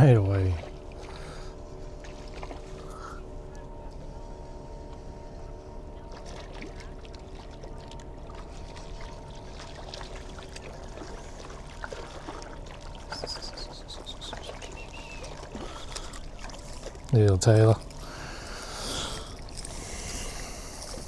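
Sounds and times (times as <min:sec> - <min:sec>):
low engine hum: 0:00.0 - 0:21.0
fish splashing in water: 0:06.2 - 0:17.0
water trickling: 0:06.2 - 0:21.0.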